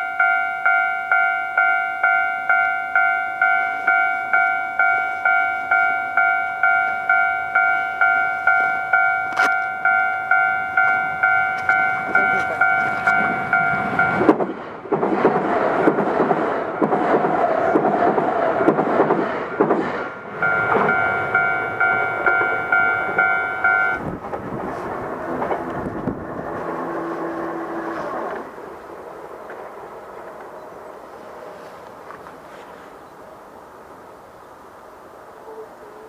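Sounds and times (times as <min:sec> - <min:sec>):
crossing warning bell ringing: 0:00.0 - 0:14.5, 0:20.1 - 0:24.2
train wheels clacking: 0:06.6 - 0:26.7.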